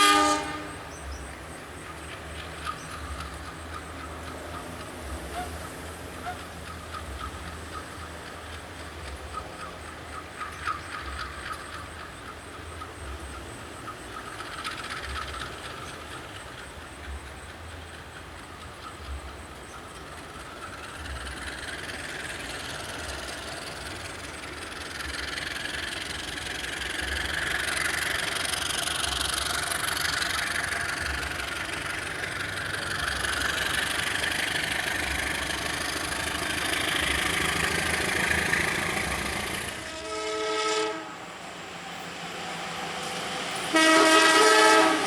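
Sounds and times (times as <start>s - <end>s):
locomotive horn blast: 0.0s - 0.9s, 39.8s - 41.3s, 43.6s - 45.0s
train running on rails: 0.0s - 45.0s.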